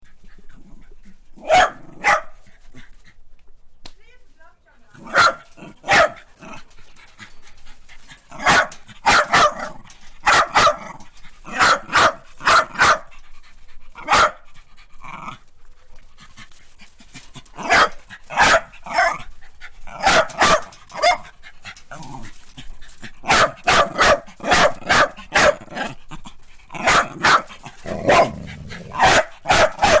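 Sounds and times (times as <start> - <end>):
small dog barking: 1.4 - 2.4, 5.0 - 6.3, 8.3 - 10.9, 11.5 - 13.1, 14.0 - 14.4, 17.6 - 19.3, 20.0 - 21.3, 23.2 - 26.0, 26.8 - 30.0.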